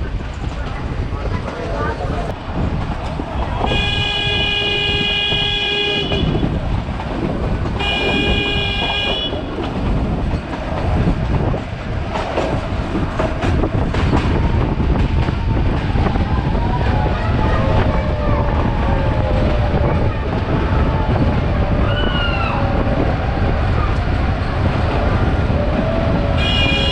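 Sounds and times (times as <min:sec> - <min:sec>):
moving train noise: 0:00.0 - 0:26.9
locomotive horn blasts: 0:03.6 - 0:06.6, 0:07.8 - 0:09.5, 0:26.4 - 0:26.9.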